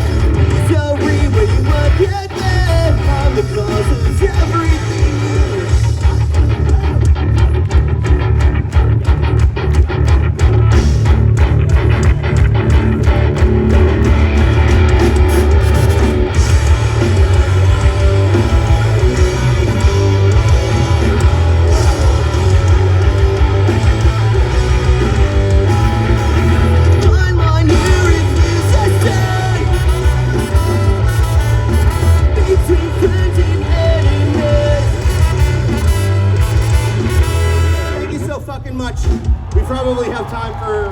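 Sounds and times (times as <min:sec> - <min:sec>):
live rock band playing: 0:00.0 - 0:40.3.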